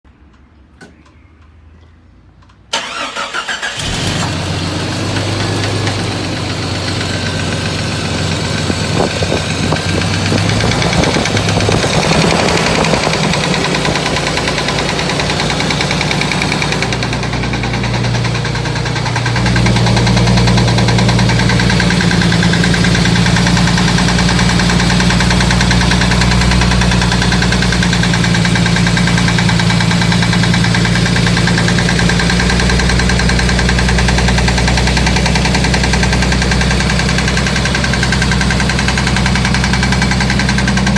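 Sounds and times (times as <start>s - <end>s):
car engine fast idle: 2.7s - 4.3s
engine cranking: 2.7s - 4.3s.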